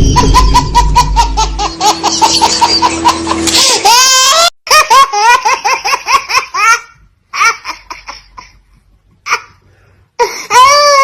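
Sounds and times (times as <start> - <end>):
high-pitched laugh: 0.0 - 8.5.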